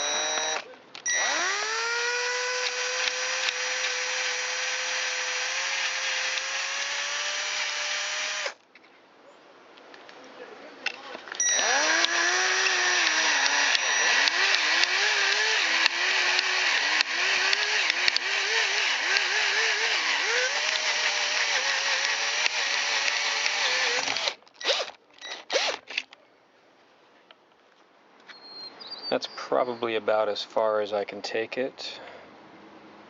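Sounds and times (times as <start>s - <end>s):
drill trigger blips: 0.0s - 8.6s, 11.4s - 25.9s
electric drill running under load: 0.0s - 8.6s, 11.4s - 25.8s.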